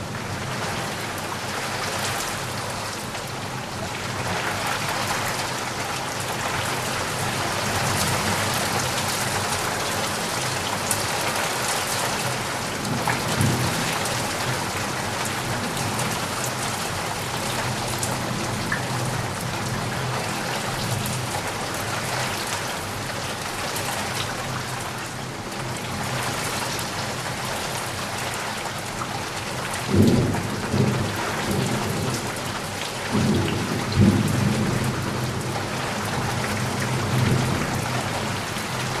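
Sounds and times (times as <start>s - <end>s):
steady rain falling: 0.0s - 39.0s.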